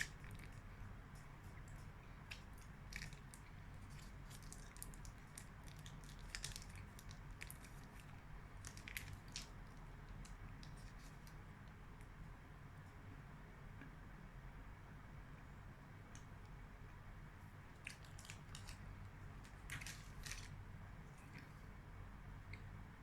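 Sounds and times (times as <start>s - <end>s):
chewing crunches: 1.4s - 11.2s, 17.8s - 21.6s.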